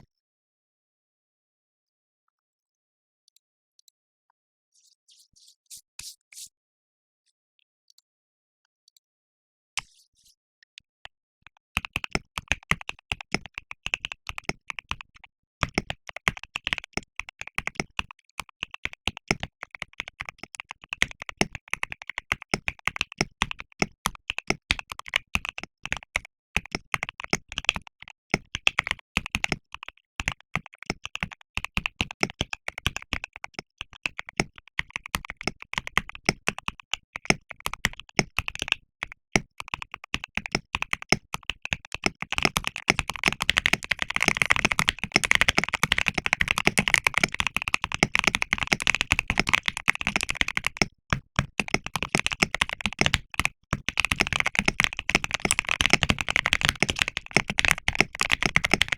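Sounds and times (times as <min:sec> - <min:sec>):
mechanical keyboard keystroke clacks: 0:39.4 - 0:58.9.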